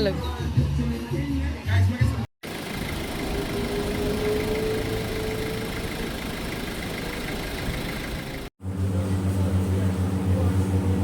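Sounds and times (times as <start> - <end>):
vehicle engine rumble: 2.4 - 11.0.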